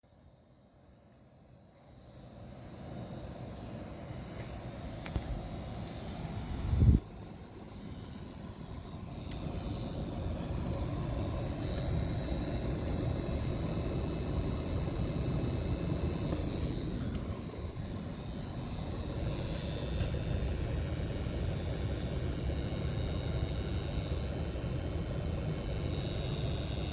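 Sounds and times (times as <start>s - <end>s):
electric spark pop: 4.3s - 5.5s
electrical click: 4.3s - 5.6s, 9.1s - 18.4s
air conditioner rushing noise: 4.9s - 7.1s.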